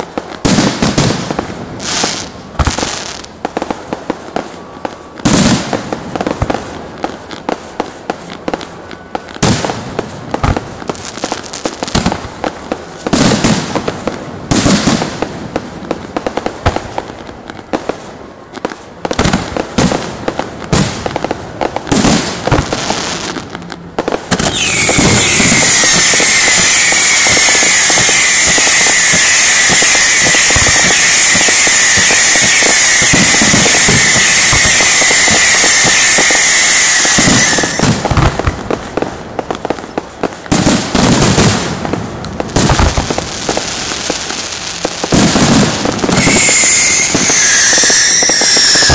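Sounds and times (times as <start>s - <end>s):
fireworks bangs: 0.0s - 48.9s
continuous hissing whistle: 1.8s - 5.3s, 24.4s - 38.1s, 45.9s - 48.9s.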